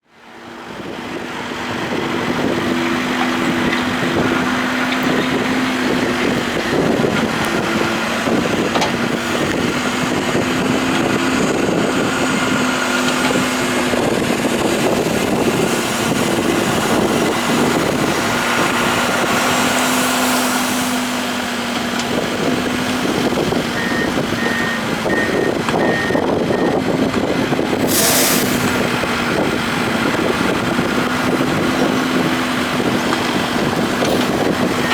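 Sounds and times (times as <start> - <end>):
diesel engine running: 0.0 - 34.9
sharp hiss: 27.9 - 28.8.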